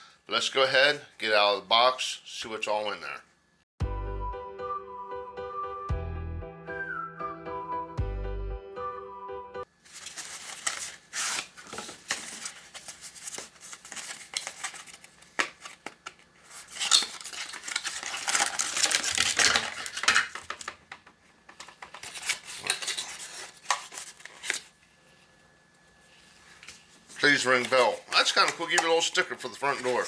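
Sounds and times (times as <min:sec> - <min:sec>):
packaging rustling: 0:09.8 - 0:24.8, 0:26.4 - 0:30.0
small parts clicking and clattering: 0:16.7 - 0:23.9.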